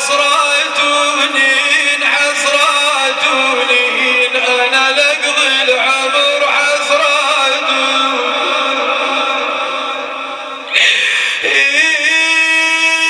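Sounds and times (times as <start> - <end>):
man chanting mournfully: 0.0 - 13.0.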